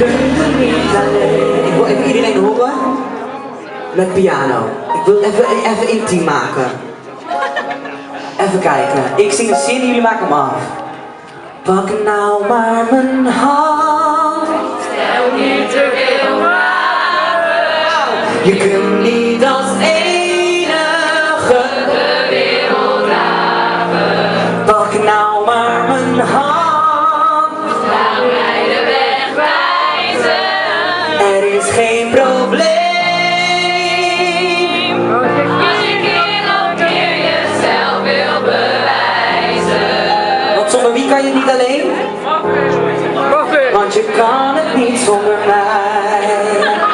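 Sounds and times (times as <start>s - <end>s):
men and women singing in harmony: 0.0s - 3.1s, 11.7s - 42.0s, 43.7s - 46.9s
instrumental accompaniment: 0.0s - 46.9s.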